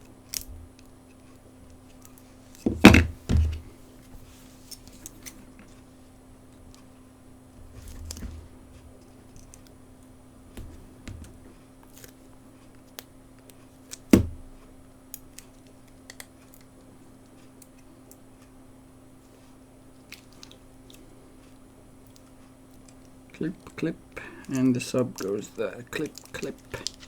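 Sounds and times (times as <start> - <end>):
faint steady hum: 0.0 - 27.0
small clicks and taps of parts: 15.1 - 18.6.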